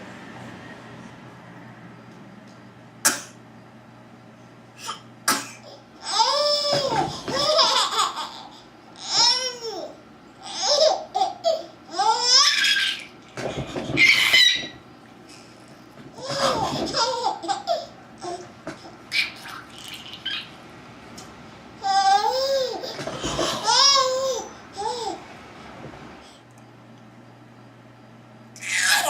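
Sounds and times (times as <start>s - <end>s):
baby laughing and squealing: 6.0s - 14.8s, 19.1s - 20.6s, 28.6s - 29.0s.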